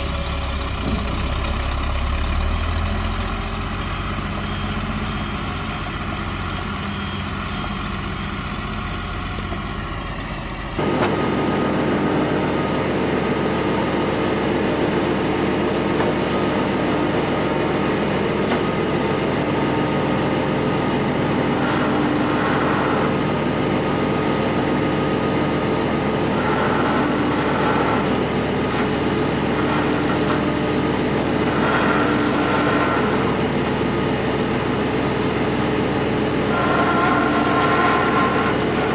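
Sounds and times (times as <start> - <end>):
large truck engine running: 0.0 - 38.9.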